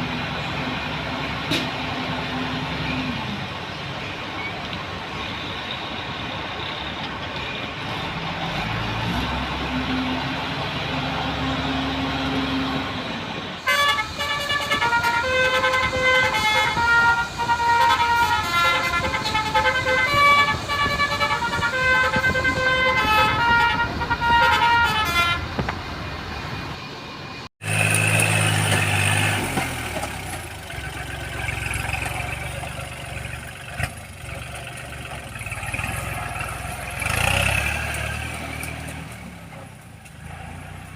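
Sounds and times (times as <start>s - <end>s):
multi-tone horn tune: 13.6s - 25.5s
diesel engine running: 27.5s - 40.9s.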